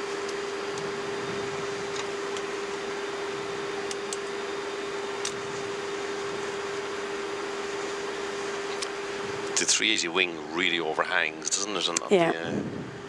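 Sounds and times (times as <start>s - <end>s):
air conditioning hiss: 0.0s - 13.0s
electrical hum: 0.0s - 13.0s.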